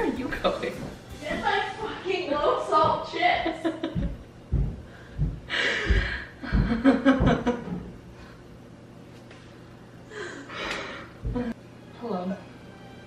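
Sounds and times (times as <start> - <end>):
dull low thuds: 2.8 - 8.0, 11.2 - 11.6
woman laughing breathily: 5.5 - 7.7.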